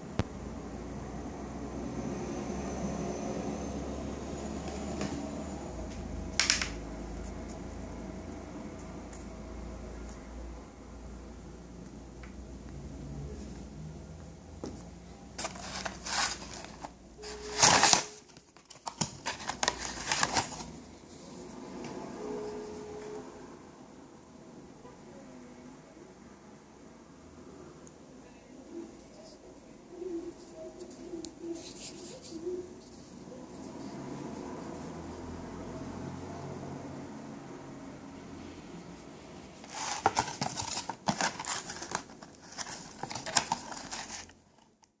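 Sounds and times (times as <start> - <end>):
packaging rustling and crinkling: 15.4 - 20.8, 39.6 - 44.8.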